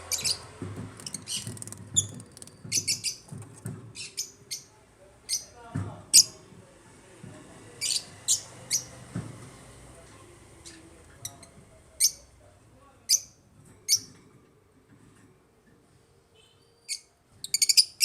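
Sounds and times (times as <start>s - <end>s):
lovebirds chirping: 0.0s - 5.6s, 16.4s - 18.0s.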